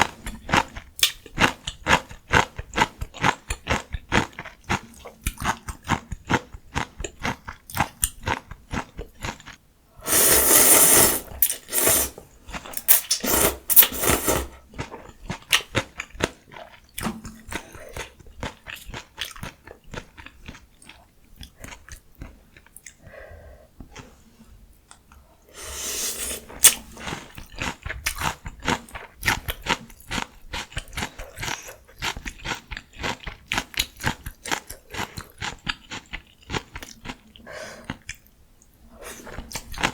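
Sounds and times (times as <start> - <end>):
wet chewing with crunchy bites: 11.4 - 23.0, 26.5 - 38.4.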